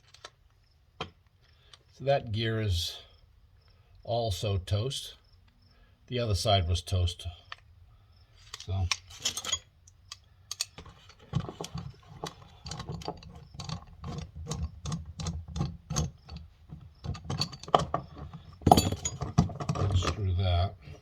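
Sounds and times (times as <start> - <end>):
metallic tool clicks and clinks: 8.4 - 16.5, 17.1 - 17.9
dull handling knocks: 10.8 - 20.2.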